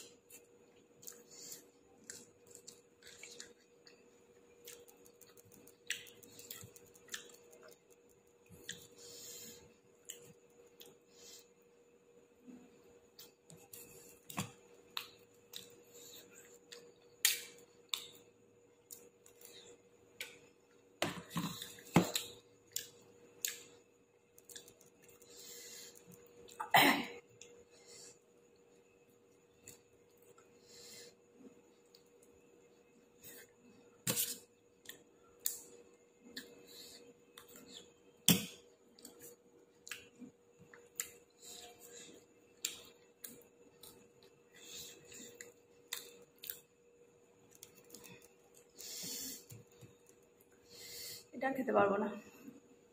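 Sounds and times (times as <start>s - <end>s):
person chewing: 0.2s - 9.2s, 34.1s - 46.7s.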